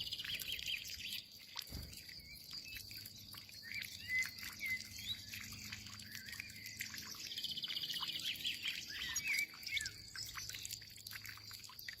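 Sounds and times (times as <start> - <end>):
goldfinch twittering: 0.0 - 12.0
water drips and splashes: 0.0 - 12.0.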